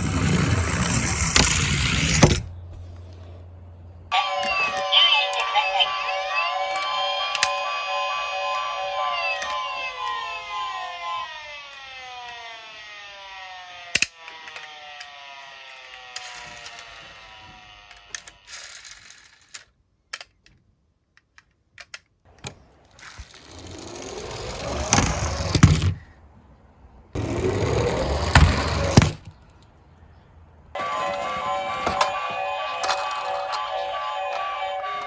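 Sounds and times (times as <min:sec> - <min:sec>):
toy cars rolling rattle: 0:00.0 - 0:02.4, 0:08.5 - 0:20.4, 0:22.9 - 0:26.0, 0:27.2 - 0:29.3, 0:30.8 - 0:35.0
toy siren winding down: 0:04.1 - 0:19.0, 0:23.1 - 0:25.6, 0:27.2 - 0:29.0, 0:30.8 - 0:35.0
plastic toy clicks: 0:13.2 - 0:22.2.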